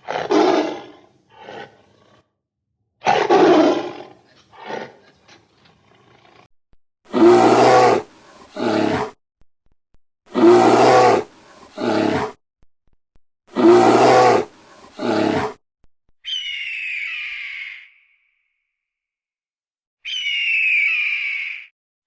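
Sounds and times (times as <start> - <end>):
big cat roaring: 0.0 - 2.3, 3.0 - 6.5, 7.1 - 9.2, 10.3 - 12.4, 13.5 - 15.6
hawk scream: 16.3 - 18.2, 20.0 - 21.7.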